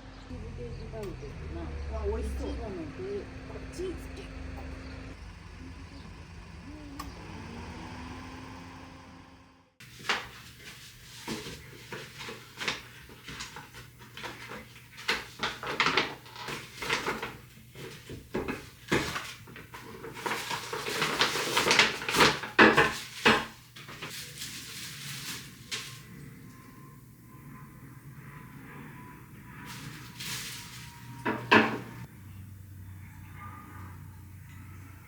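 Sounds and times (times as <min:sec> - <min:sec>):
dishes and utensils clattering: 0:09.8 - 0:26.5, 0:29.6 - 0:32.1.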